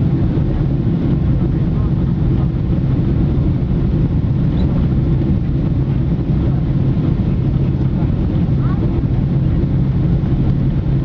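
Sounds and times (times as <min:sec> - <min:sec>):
airplane cabin rumble: 0:00.0 - 0:11.0.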